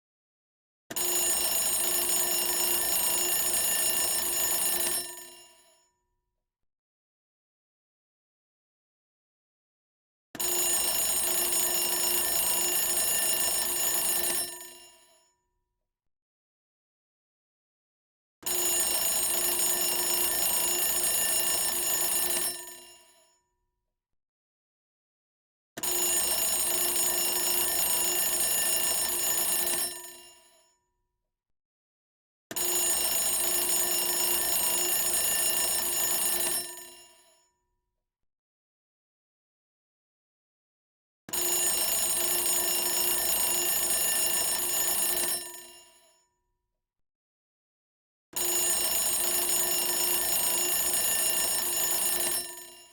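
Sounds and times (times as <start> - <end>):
alarm bell ringing: 48.8 - 52.9.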